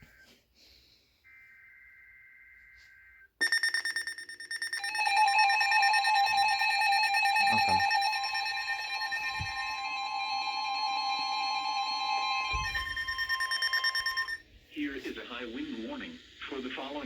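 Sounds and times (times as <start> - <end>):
two-tone alarm: 1.1 - 14.4.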